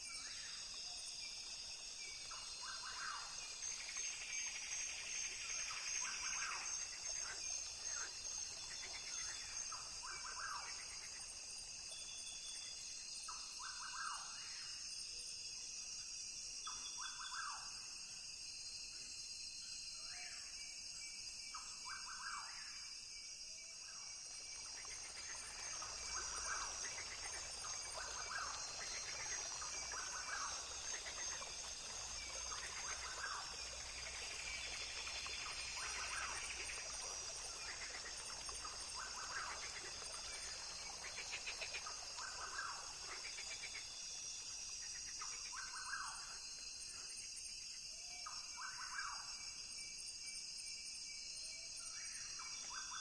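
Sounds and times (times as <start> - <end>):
high-pitched insect drone: 24.0 - 52.2.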